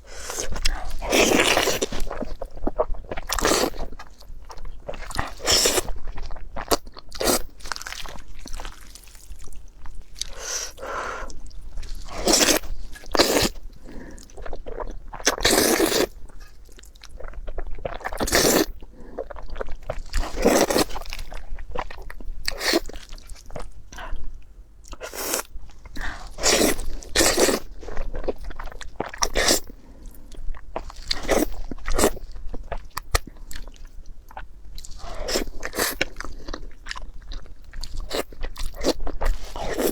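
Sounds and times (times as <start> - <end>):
person crunching and chewing food: 0.0 - 39.9.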